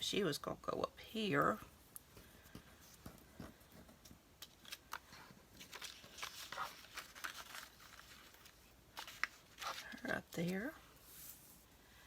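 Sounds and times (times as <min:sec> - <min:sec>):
small paper clicks: 0:04.4 - 0:10.1
paper rustling: 0:04.4 - 0:11.7.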